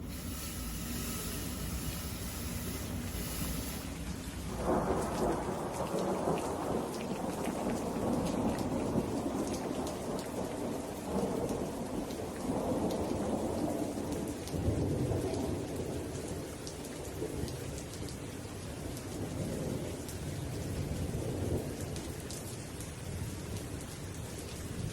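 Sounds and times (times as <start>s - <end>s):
rain hissing: 0.0s - 6.7s
thunder rumbling: 4.5s - 6.9s.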